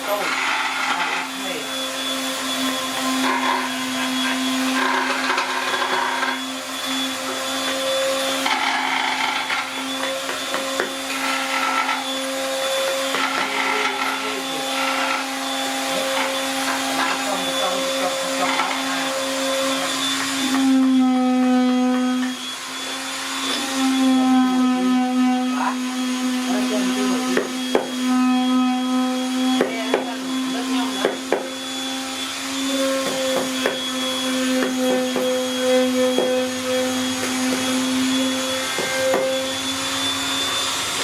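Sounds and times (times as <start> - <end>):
power tool motor hum: 0.0 - 41.0
rasping on wood: 2.7 - 20.7.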